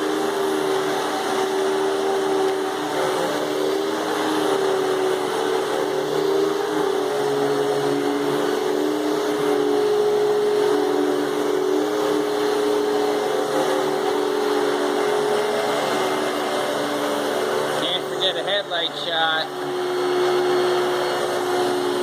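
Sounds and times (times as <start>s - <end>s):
vacuum cleaner running: 0.0s - 22.0s.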